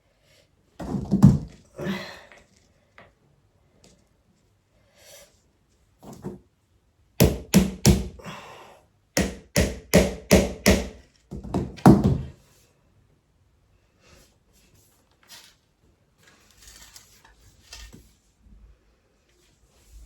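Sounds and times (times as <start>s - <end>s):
hammer knocking on furniture parts: 7.2s - 8.2s, 9.2s - 12.3s.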